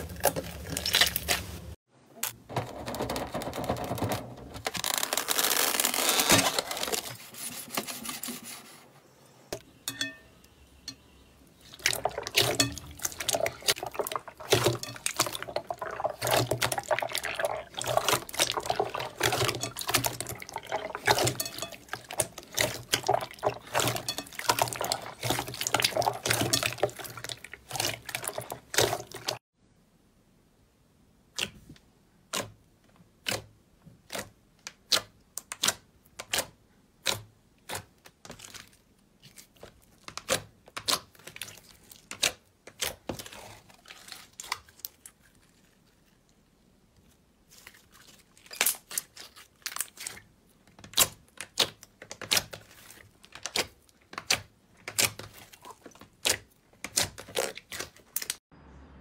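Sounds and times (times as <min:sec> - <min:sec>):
wet slime squelching: 0:00.0 - 0:01.8, 0:11.4 - 0:29.4, 0:32.2 - 0:58.4.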